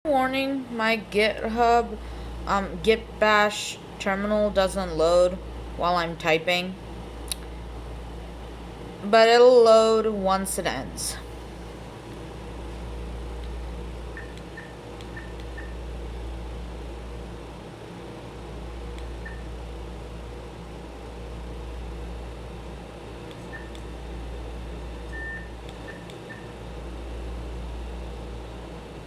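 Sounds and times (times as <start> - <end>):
low electrical hum: 0.0 - 29.0
morse code beeps: 14.2 - 15.8, 25.1 - 26.5.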